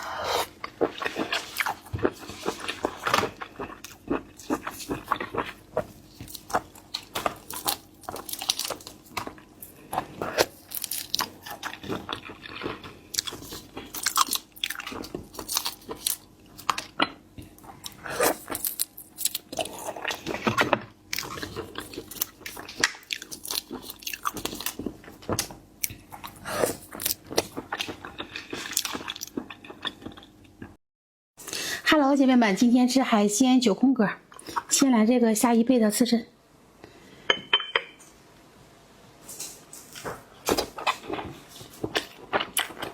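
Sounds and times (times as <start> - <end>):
person chewing seafood: 0.0 - 30.8, 39.4 - 42.9.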